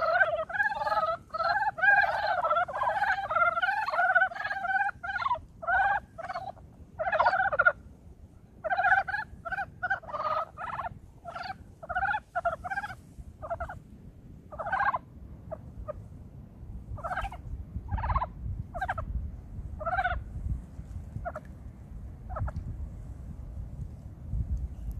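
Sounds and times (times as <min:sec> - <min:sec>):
frogs clucking trills: 0:00.0 - 0:07.8, 0:08.6 - 0:13.8, 0:14.5 - 0:16.0, 0:17.0 - 0:19.1, 0:19.8 - 0:20.2.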